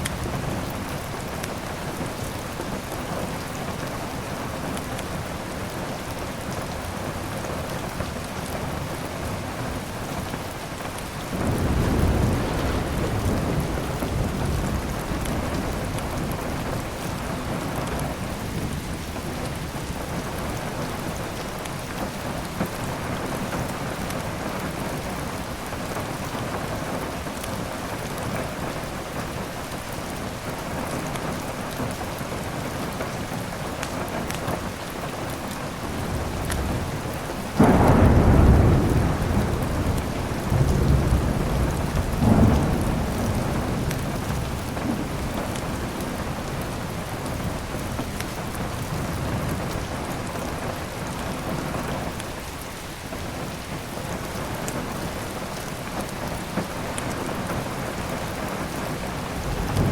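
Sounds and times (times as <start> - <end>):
steady rain falling: 0.0 - 59.9
thunderclap rumbling: 11.3 - 18.8, 35.8 - 51.9, 58.8 - 59.9.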